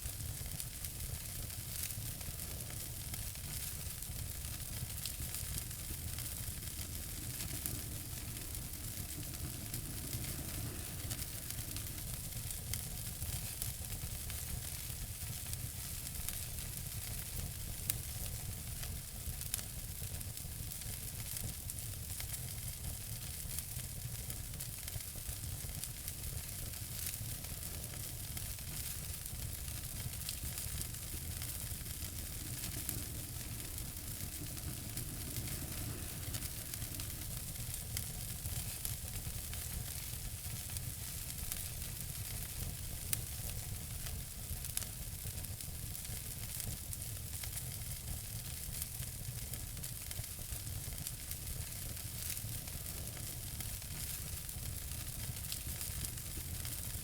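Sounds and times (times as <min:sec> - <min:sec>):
soft hiss: 0:00.0 - 0:19.6, 0:24.5 - 0:50.3
loud fire pops: 0:00.0 - 0:57.0
wood fire crackling: 0:00.0 - 0:57.0.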